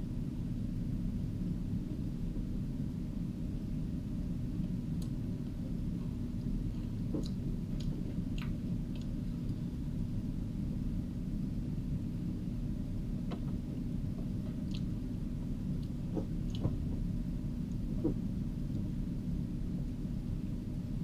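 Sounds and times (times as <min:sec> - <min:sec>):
low background rumble: 0:00.0 - 0:21.0
person chewing a cookie: 0:14.6 - 0:15.0.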